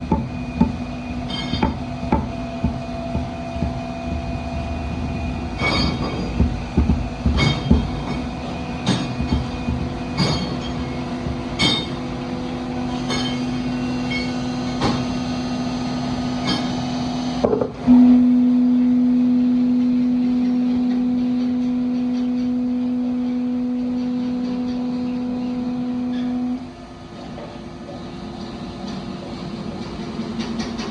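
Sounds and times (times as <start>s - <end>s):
machine motor hum: 0.0s - 30.9s
sharp metallic clanks: 0.6s - 12.3s, 12.9s - 15.2s.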